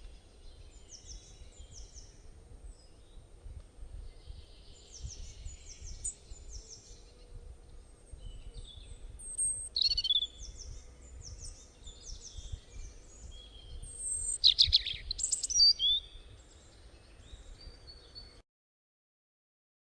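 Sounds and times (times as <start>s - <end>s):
songbirds chirping: 0.0s - 18.4s.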